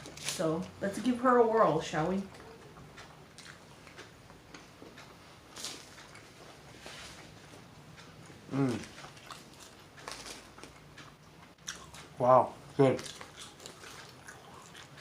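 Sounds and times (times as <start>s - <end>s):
person chewing a burger: 2.3s - 12.2s, 12.8s - 15.0s
voice humming: 8.5s - 8.9s.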